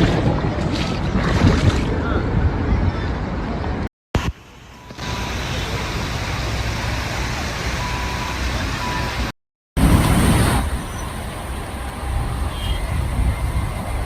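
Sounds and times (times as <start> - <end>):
road traffic noise: 1.8 - 14.0.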